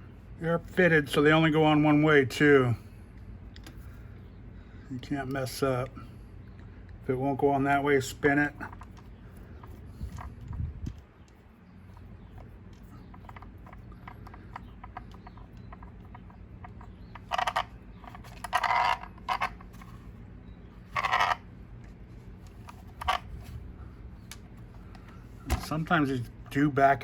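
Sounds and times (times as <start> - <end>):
screw creaking into plastic: 12.8 - 19.9, 20.9 - 21.5.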